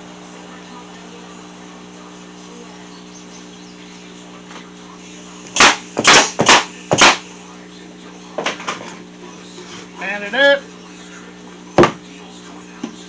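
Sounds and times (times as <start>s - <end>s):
staple gun firing into wood: 5.6s - 7.2s.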